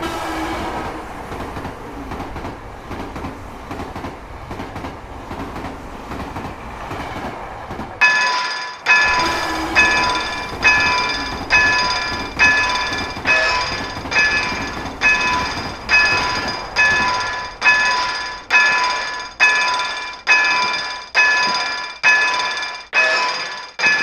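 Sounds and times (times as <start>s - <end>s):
train wheels rumbling on rails: 0.0s - 24.0s
crossing warning bell ringing: 8.0s - 24.0s.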